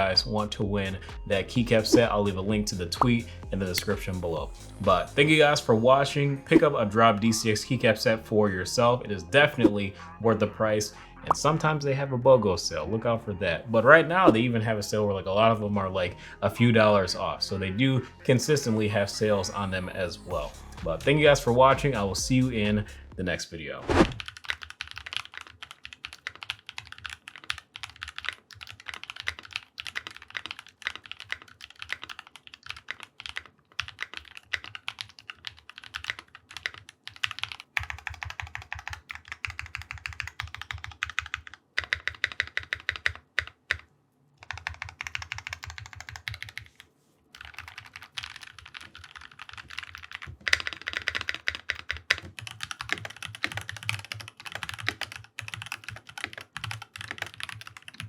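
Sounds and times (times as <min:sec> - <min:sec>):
fast mechanical keyboard typing: 0:24.2 - 0:58.0.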